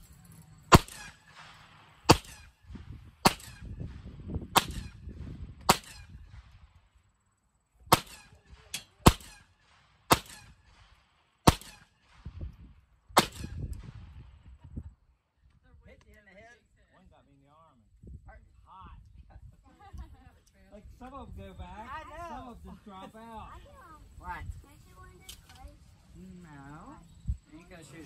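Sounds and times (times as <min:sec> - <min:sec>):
gunshots: 0:00.7 - 0:02.6, 0:03.2 - 0:03.9, 0:04.5 - 0:06.2, 0:07.9 - 0:12.3, 0:13.2 - 0:13.8.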